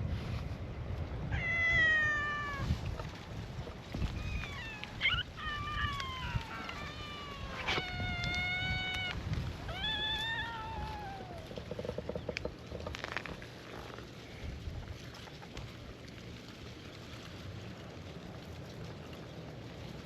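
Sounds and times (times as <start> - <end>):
cats meowing: 1.3 - 2.8, 4.1 - 11.5.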